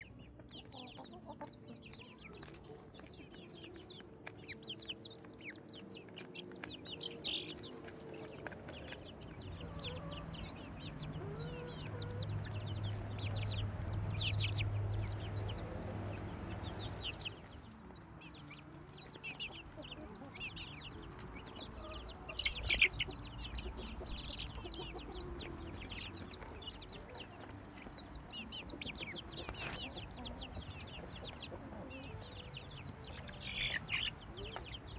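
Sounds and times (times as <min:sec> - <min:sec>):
chicks peeping: 0:00.0 - 0:34.9.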